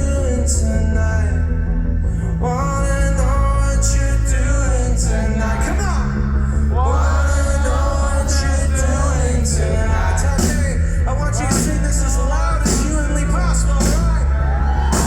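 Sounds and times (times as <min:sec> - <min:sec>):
person singing: 0:02.1 - 0:15.0
live pop band playing: 0:10.1 - 0:15.0.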